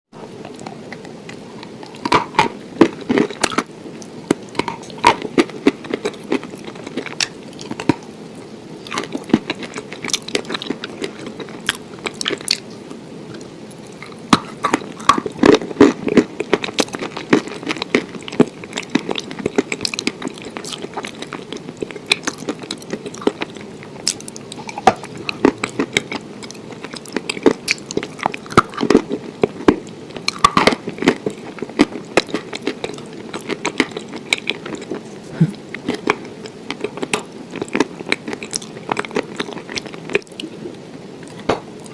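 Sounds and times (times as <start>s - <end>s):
close chewing and crunching: 0.4s - 41.9s
wet mouth sounds: 32.3s - 36.2s.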